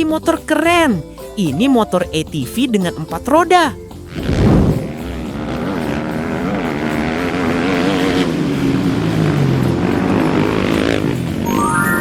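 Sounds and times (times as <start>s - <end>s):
small engine running: 4.1s - 12.0s.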